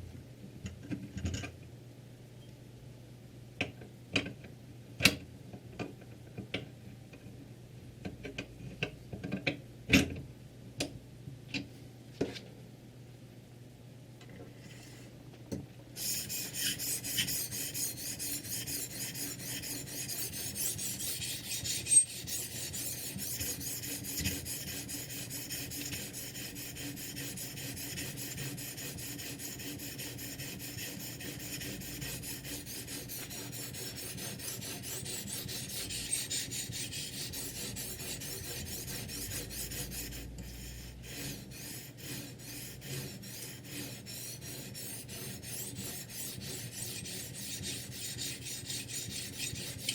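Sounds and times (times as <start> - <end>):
sharpening stone rasping on knife: 16.0 - 49.9.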